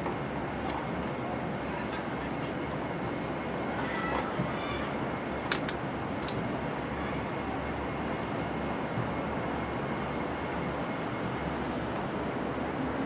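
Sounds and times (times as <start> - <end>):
sharp clicks: 5.5 - 6.4.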